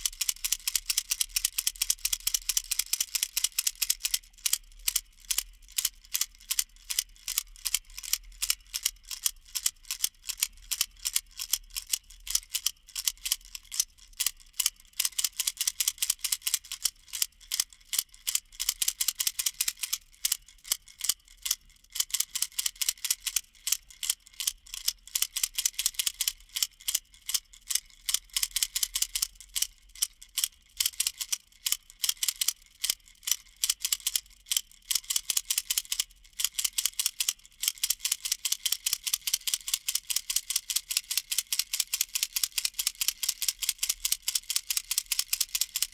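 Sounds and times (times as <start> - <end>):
baby rattle shaking: 34.6 - 45.9.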